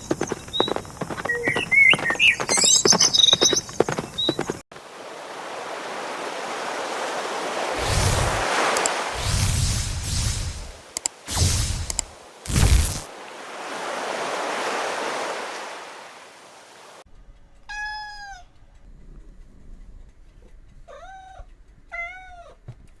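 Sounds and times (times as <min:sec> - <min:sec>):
rushing noise: 0:07.7 - 0:13.1
cat meowing: 0:20.9 - 0:22.6.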